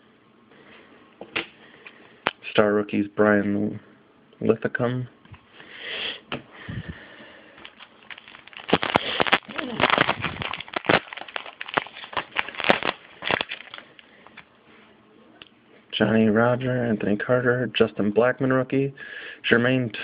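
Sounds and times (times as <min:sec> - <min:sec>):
wrapper crinkling: 0:07.5 - 0:14.4.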